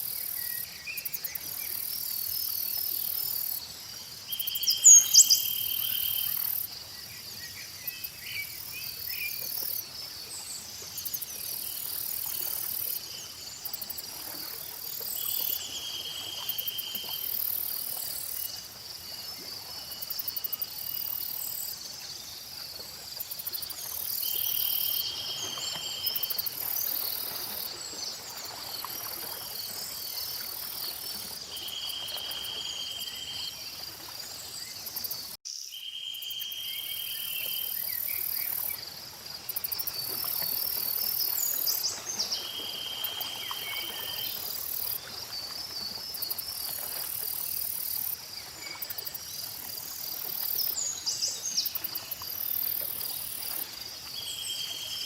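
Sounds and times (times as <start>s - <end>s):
crickets and insects chirring: 0.0s - 55.0s
bird chirps: 4.4s - 6.5s.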